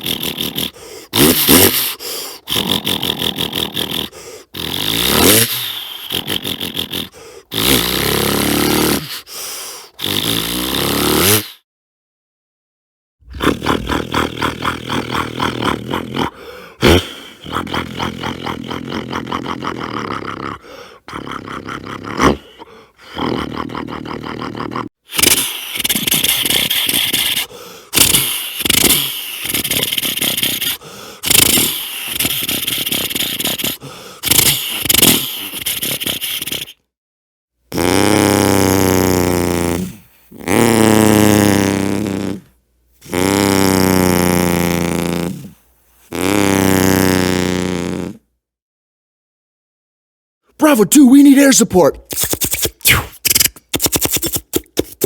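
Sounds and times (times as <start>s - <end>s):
man making rasping mouth noises: 0.0s - 11.6s, 13.2s - 36.9s, 37.7s - 48.3s, 50.5s - 55.0s
man's voice sliding downward tones: 50.6s - 53.5s.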